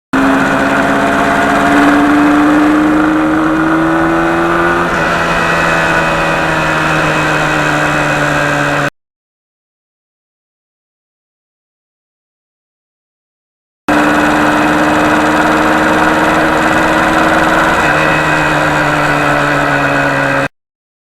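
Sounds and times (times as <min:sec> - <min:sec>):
motorcycle engine running: 0:00.2 - 0:08.9, 0:13.9 - 0:20.5.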